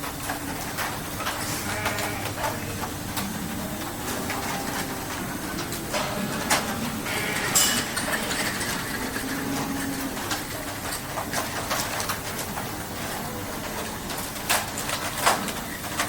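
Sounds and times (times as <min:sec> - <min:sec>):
industrial machinery noise: 0:00.0 - 0:16.0
metal clanks: 0:05.9 - 0:11.3.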